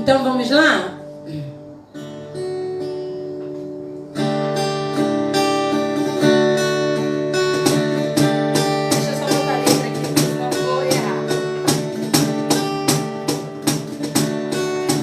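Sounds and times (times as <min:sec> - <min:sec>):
acoustic guitar strumming: 0:00.0 - 0:15.0.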